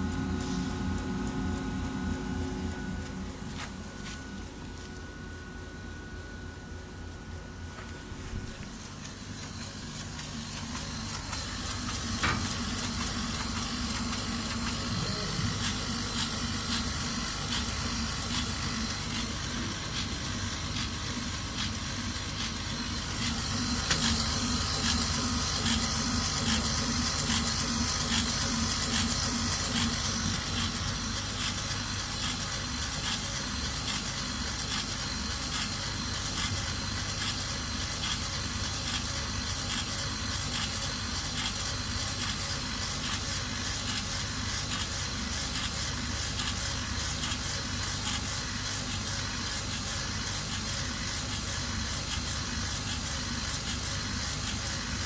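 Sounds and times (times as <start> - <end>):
laser cutter hissing and whining: 0.0 - 4.4, 5.1 - 55.0
pulsing low hum: 0.0 - 31.2.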